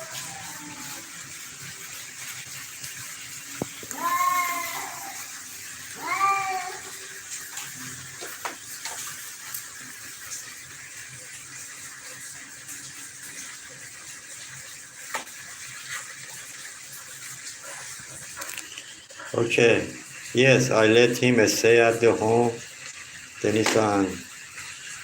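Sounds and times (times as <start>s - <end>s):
cat meowing: 0.0s - 1.1s, 3.9s - 5.3s, 6.0s - 7.0s.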